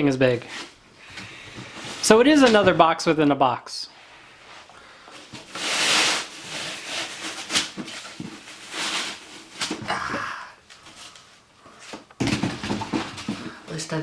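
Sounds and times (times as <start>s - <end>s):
packaging rustling and scraping: 5.1s - 9.8s.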